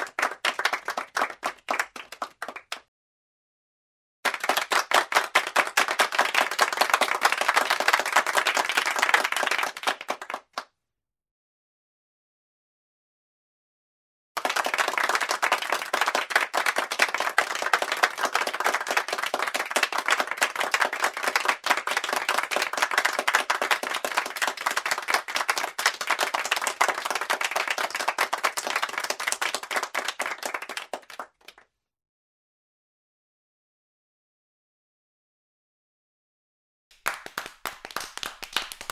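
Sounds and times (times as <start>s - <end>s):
people clapping: 0.0s - 2.9s, 4.2s - 10.7s, 14.4s - 31.7s, 36.9s - 38.9s.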